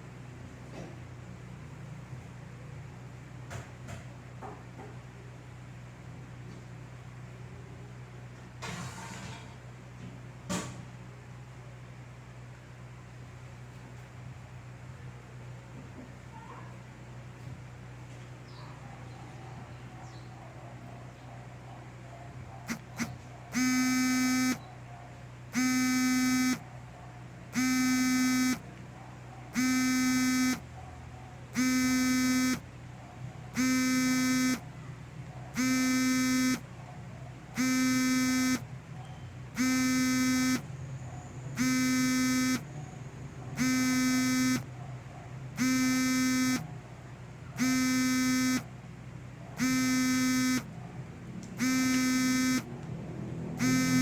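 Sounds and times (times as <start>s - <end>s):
electronic buzzer beeping: 22.7s - 24.6s, 25.6s - 26.6s, 27.6s - 28.6s, 29.6s - 30.7s, 31.6s - 32.6s, 33.6s - 34.6s, 35.6s - 36.6s, 37.6s - 38.6s, 39.6s - 40.7s, 41.6s - 42.7s, 43.6s - 44.7s, 45.6s - 46.6s, 47.6s - 48.7s, 49.6s - 50.7s, 51.6s - 52.7s, 53.6s - 54.0s.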